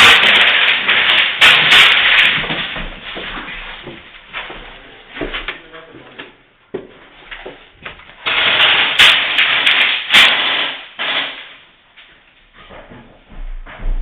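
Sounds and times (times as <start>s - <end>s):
airsoft gun full-auto bursts: 8.2s - 11.6s.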